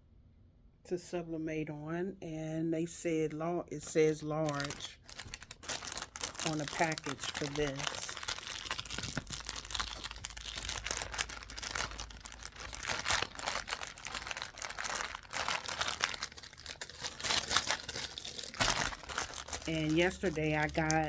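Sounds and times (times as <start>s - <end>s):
packaging crinkling: 4.4s - 21.0s.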